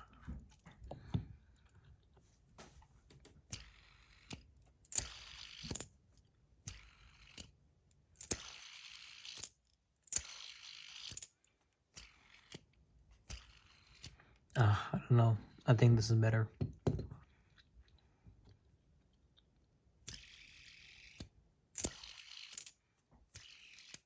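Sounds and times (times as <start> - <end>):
fidget spinner clicking: 3.2 - 6.0, 6.6 - 7.6, 8.2 - 14.2, 20.0 - 24.0
fidget spinner whirring: 3.4 - 6.0, 6.6 - 14.5, 20.0 - 24.0.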